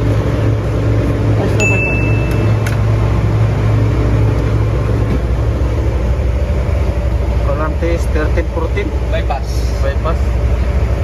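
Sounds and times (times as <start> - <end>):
ship machinery drone: 0.0 - 11.0
thin high beep: 1.6 - 2.6.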